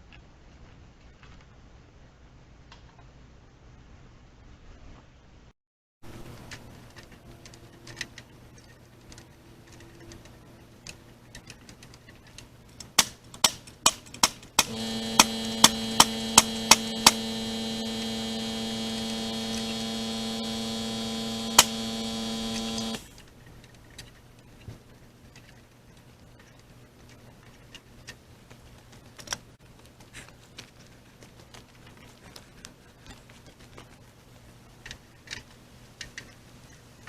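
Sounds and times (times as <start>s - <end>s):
machine hum: 14.6s - 23.2s.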